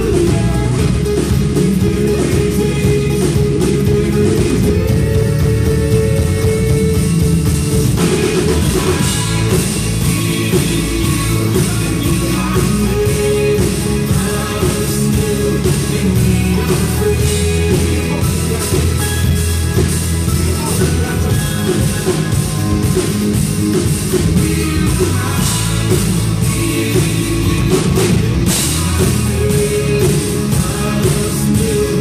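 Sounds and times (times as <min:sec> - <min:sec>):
bass: 0:00.0 - 0:32.0
guitar: 0:00.0 - 0:32.0
steady drum beat: 0:00.0 - 0:32.0.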